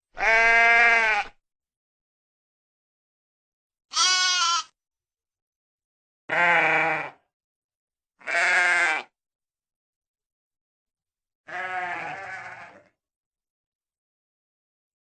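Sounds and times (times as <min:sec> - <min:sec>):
sheep bleating: 0:00.2 - 0:01.4, 0:03.9 - 0:04.8, 0:06.3 - 0:07.2, 0:08.2 - 0:09.1, 0:11.5 - 0:13.0.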